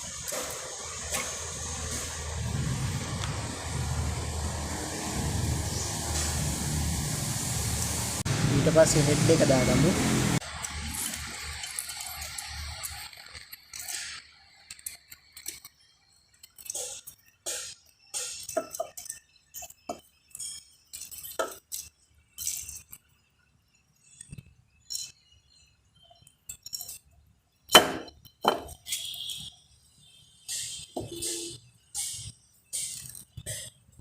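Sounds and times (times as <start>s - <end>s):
metal engine parts clinking: 26.0s - 29.5s.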